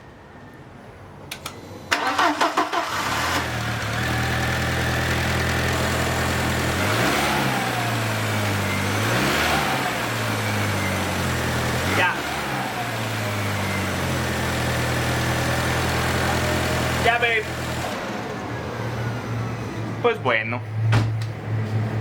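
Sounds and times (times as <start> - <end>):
starter cranking engine: 1.9 - 3.5
car engine idling and revving: 2.1 - 22.0.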